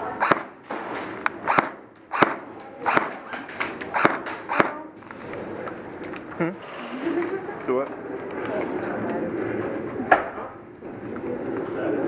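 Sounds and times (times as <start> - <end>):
airsoft gun shots: 0.0 - 4.9.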